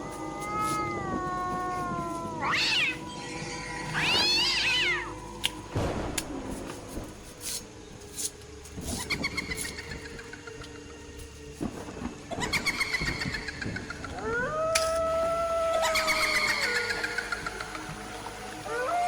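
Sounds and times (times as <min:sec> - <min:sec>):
meow-like animal cries: 0:00.0 - 0:05.2, 0:14.2 - 0:17.4, 0:18.6 - 0:19.0.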